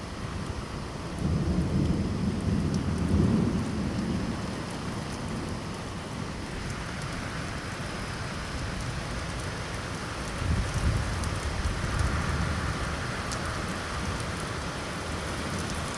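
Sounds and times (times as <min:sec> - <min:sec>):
heavy rain falling: 0:00.0 - 0:15.9
thunder rumble: 0:01.2 - 0:05.7.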